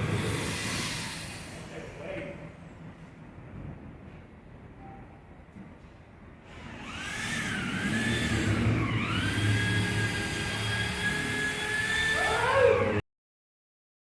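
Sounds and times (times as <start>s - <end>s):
air tool whining: 0.0s - 2.2s, 6.4s - 13.0s.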